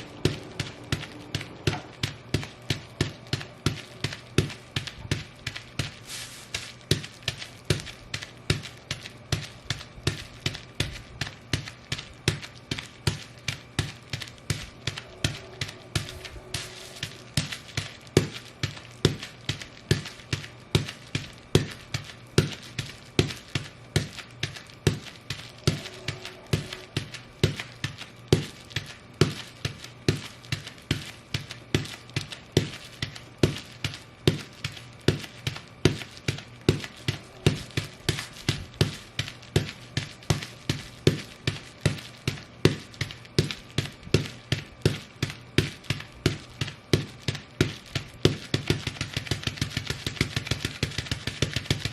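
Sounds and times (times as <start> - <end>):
boots stomping on bubble wrap: 0.0 - 51.9.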